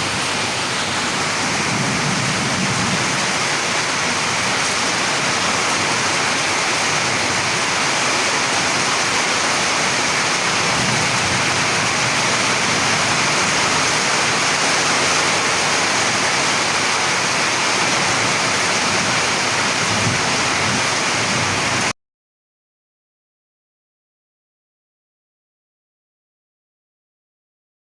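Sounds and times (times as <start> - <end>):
heavy rain falling: 0.0 - 21.9.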